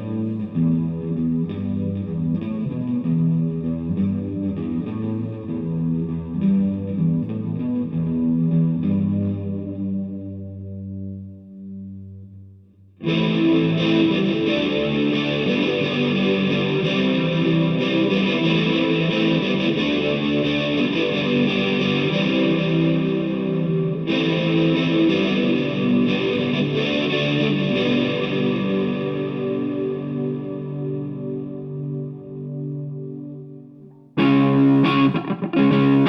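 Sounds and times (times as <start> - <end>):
distorted electric guitar riffing: 13.0 - 36.0.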